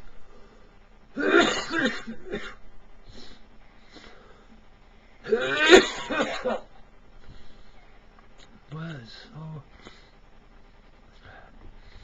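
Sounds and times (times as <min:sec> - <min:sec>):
person coughing: 0:01.2 - 0:02.6, 0:05.2 - 0:06.7.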